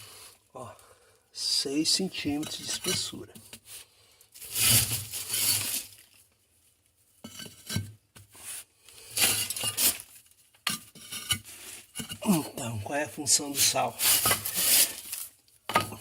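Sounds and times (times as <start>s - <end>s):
bricks and masonry tools scraping: 2.1s - 3.2s, 4.4s - 6.0s, 7.3s - 10.1s, 10.7s - 12.4s, 13.5s - 16.0s.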